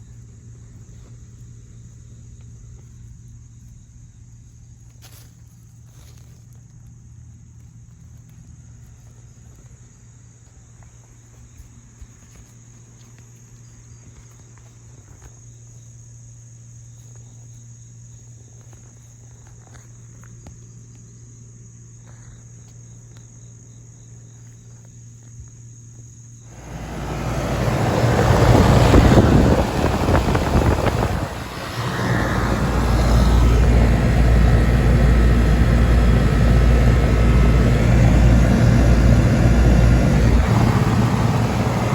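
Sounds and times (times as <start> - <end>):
heat pump fan whooshing: 26.5 - 41.9
steady high whine: 26.5 - 41.9
steady low hum: 26.5 - 41.9.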